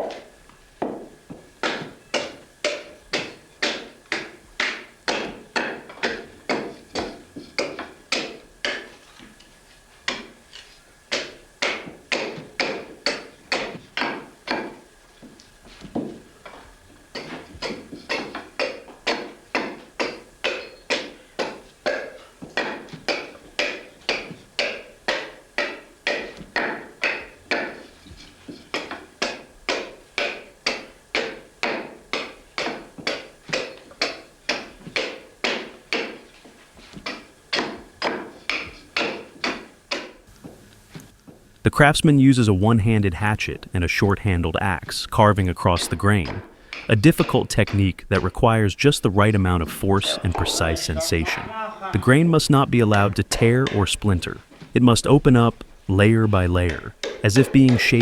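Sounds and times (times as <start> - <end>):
hatchet chopping wood: 0.0 - 9.0, 10.1 - 40.2, 46.2 - 48.3, 56.9 - 58.0.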